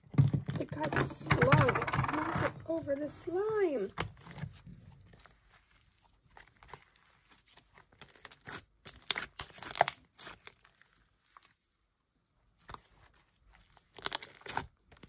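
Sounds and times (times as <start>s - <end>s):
slime squished by hand: 6.4s - 11.4s.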